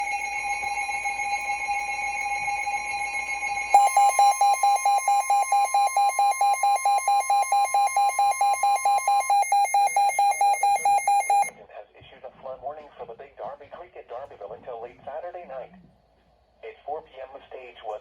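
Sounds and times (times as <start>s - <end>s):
faint steady alarm tone: 0.0s - 11.5s
steady electronic alarm tone: 0.0s - 11.5s
rapid even beeping: 3.8s - 11.5s.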